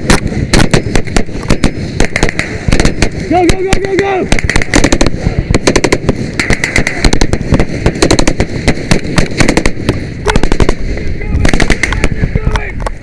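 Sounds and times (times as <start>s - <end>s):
rapid rifle fire: 0.0s - 12.8s.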